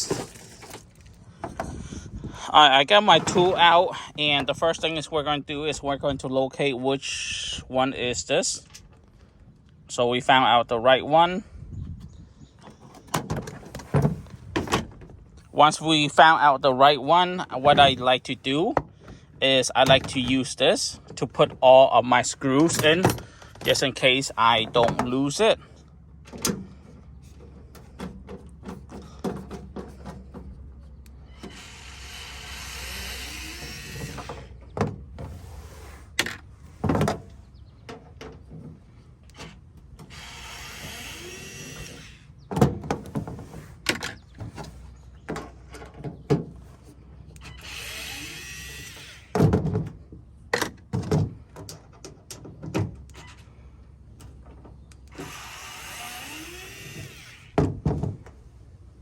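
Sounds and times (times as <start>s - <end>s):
power screwdriver whirring: 31.3s - 34.6s, 39.4s - 42.3s, 47.4s - 49.4s, 55.1s - 57.6s.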